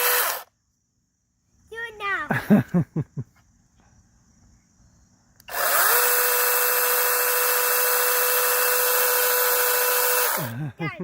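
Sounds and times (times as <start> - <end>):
mini chainsaw motor whining: 0.0 - 0.5, 5.4 - 10.7.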